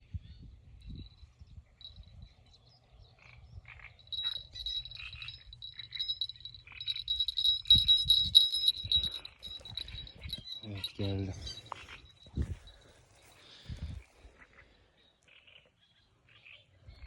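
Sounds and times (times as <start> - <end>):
bite-alarm bell jingling: 1.0 - 2.6, 3.8 - 13.9.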